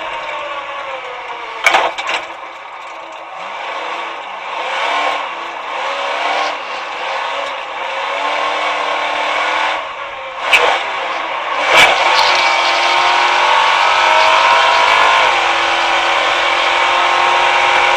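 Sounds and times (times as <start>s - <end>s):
buggy engine revving hard: 3.3s - 17.9s.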